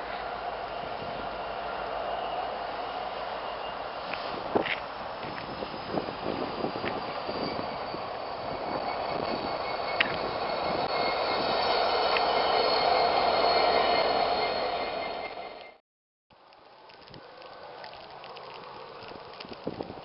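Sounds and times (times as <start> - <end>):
freight locomotive rumbling past: 0.0 - 15.8
high-pitched wheel squeal: 5.2 - 15.8.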